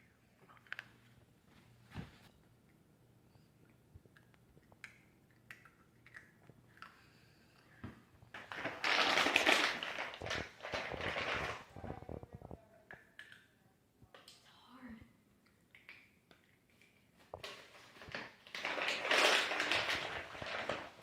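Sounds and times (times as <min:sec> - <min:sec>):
mouth clicks and smacks: 0:04.0 - 0:07.0.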